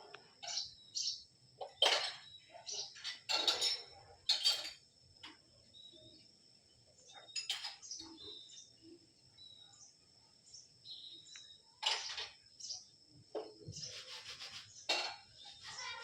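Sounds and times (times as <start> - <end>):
harsh bird calls: 0.0 - 3.3, 10.9 - 16.0
birds chirping: 0.0 - 16.0.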